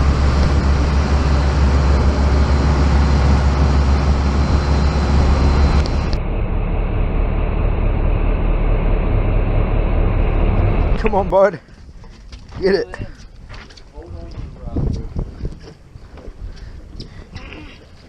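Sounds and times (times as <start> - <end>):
wind on microphone: 0.0 - 6.3, 11.8 - 18.0
boat engine rumble: 0.0 - 18.0.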